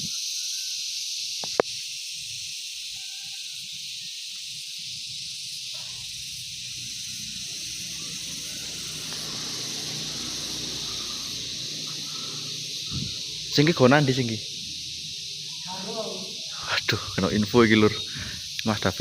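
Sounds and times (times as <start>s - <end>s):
high-pitched hiss: 0.0s - 19.0s.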